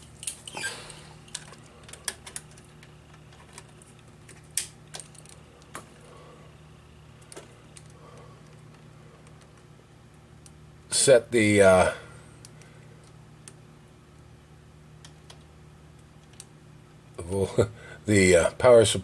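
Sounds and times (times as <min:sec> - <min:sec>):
small parts clicking and tapping: 0:00.0 - 0:06.0, 0:07.2 - 0:09.7, 0:12.4 - 0:13.6, 0:15.0 - 0:16.5
steady low hum: 0:00.0 - 0:19.0.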